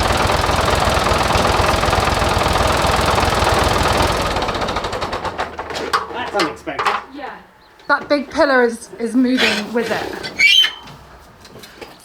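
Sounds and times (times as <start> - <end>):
tractor engine running under load: 0.0 - 5.9.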